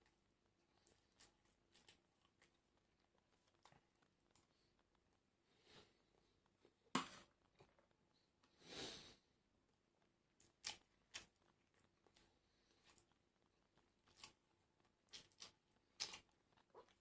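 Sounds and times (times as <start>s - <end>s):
chewing: 0.6s - 5.2s, 10.4s - 17.0s.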